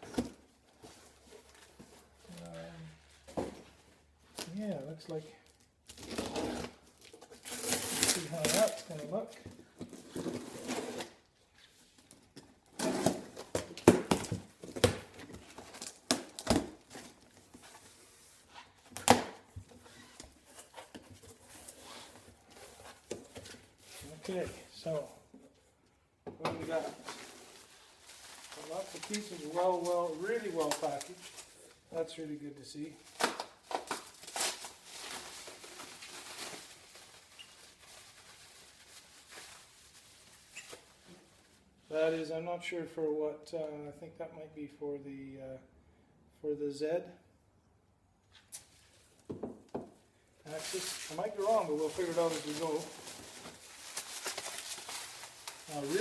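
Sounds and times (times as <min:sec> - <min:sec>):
packaging rustling and crinkling: 0:05.4 - 0:11.2, 0:26.7 - 0:31.7, 0:33.0 - 0:41.0, 0:50.5 - 0:56.0
packaging crinkling and tearing: 0:05.8 - 0:09.2, 0:50.5 - 0:56.0.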